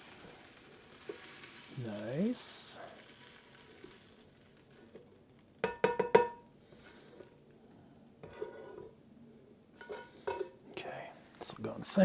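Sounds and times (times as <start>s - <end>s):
utensil clanking on frying pan: 5.6s - 6.5s, 8.2s - 8.9s, 9.8s - 10.6s.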